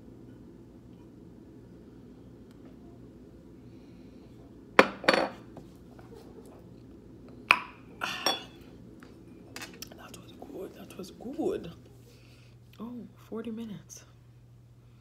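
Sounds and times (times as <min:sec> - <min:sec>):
glass and dishes clinking: 0:07.5 - 0:08.6.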